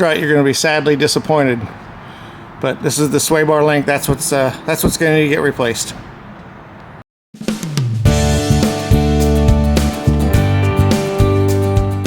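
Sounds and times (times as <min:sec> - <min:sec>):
guitar-led instrumental music: 0:08.0 - 0:12.0.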